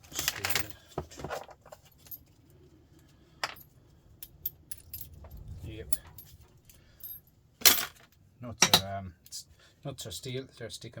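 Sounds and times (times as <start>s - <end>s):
small metal parts clinking: 0.0s - 2.4s, 3.4s - 8.8s.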